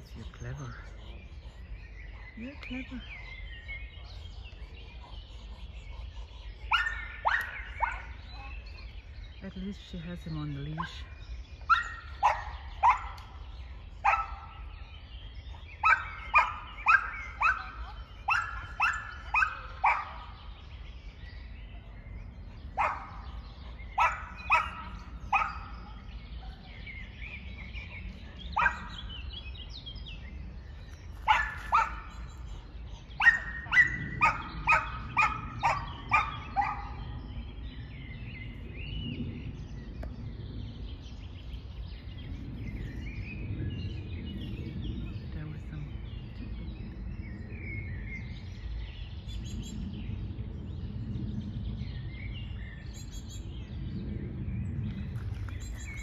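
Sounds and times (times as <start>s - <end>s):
birds chirping faintly: 0.0s - 56.0s
dog barking: 6.7s - 8.5s, 11.7s - 13.4s, 14.0s - 14.7s, 15.8s - 20.4s, 22.8s - 26.7s, 28.5s - 29.1s, 31.2s - 32.2s, 33.2s - 37.1s.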